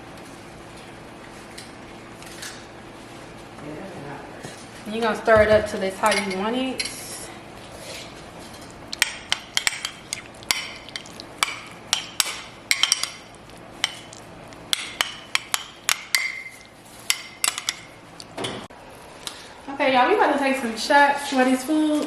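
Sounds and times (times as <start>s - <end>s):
spoon clinking against bowl: 9.0s - 14.1s, 14.7s - 17.9s.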